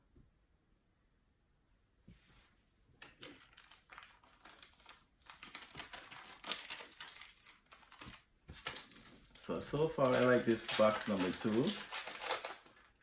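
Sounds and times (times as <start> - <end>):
plastic wrapper crinkling: 3.0 - 13.0.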